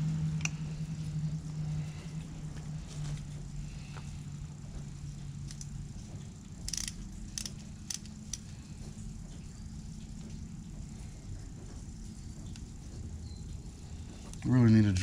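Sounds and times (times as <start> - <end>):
steady low hum: 0.0 - 15.0
hand tool clicking: 6.7 - 8.4.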